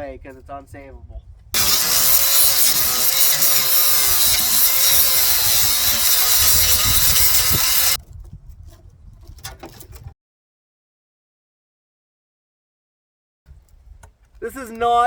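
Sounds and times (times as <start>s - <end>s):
power saw cutting sheet metal: 1.6s - 8.0s.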